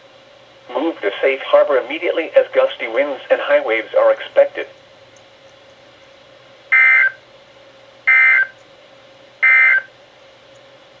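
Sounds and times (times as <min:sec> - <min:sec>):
shrill digital warbles: 0:06.8 - 0:07.2, 0:08.1 - 0:08.5, 0:09.4 - 0:09.9.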